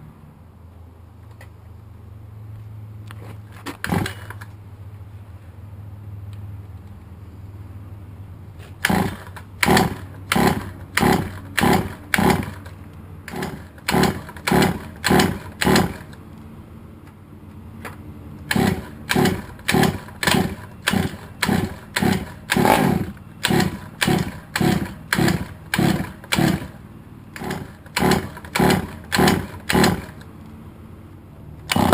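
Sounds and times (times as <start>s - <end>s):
engine cranking without starting: 3.7s - 4.5s, 8.8s - 16.2s, 18.4s - 30.3s, 31.6s - 31.9s.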